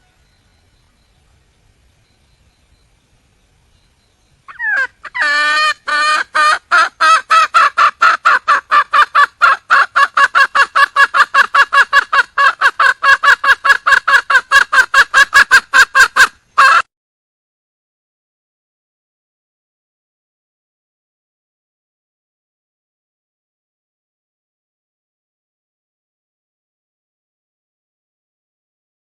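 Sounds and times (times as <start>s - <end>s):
hen clucking: 4.5s - 16.9s.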